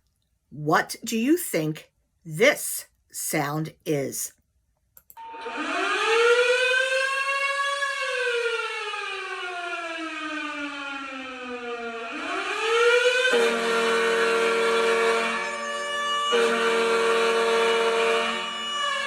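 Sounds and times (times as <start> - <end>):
fire siren winding up and down: 5.2 - 19.0.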